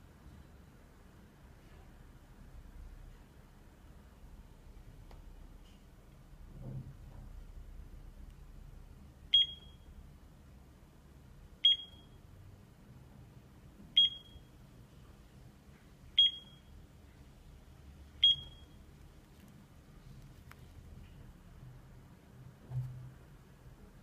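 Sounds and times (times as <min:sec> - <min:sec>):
alarm clock beeping: 0:14.0 - 0:14.5, 0:16.2 - 0:16.7, 0:18.2 - 0:18.8.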